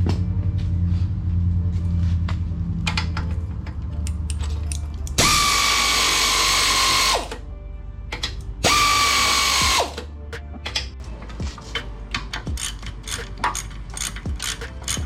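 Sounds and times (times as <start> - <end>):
power tool whining: 5.2 - 7.4, 8.6 - 10.0.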